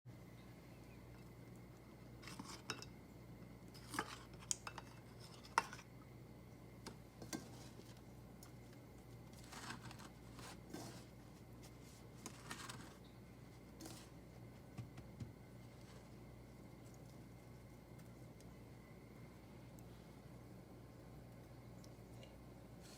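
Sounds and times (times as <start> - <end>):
steady low hum: 0.1 - 22.9
small objects clicking and scraping: 9.3 - 11.1, 12.2 - 13.1.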